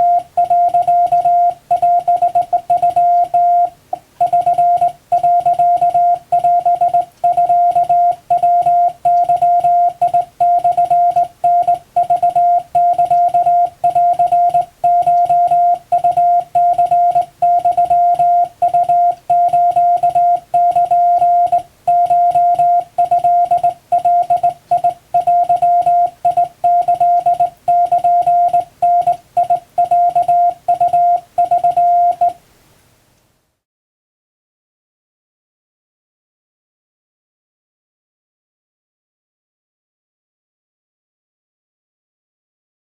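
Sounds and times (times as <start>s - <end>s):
morse code tone: 0.0s - 32.4s.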